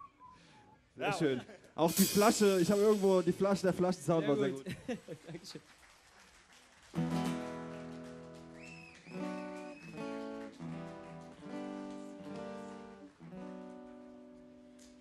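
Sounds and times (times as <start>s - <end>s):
acoustic guitar strumming chords: 9.4s - 15.0s.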